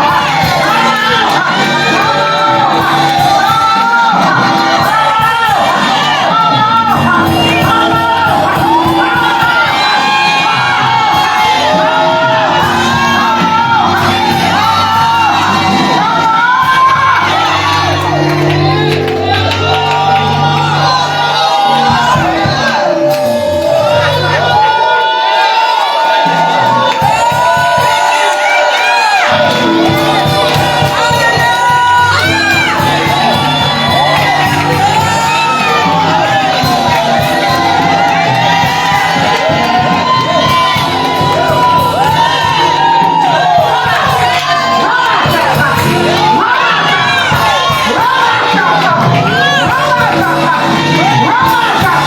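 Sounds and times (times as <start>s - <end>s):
voices singing and shouting: 0.0s - 52.0s
held instrument chords: 29.3s - 52.0s.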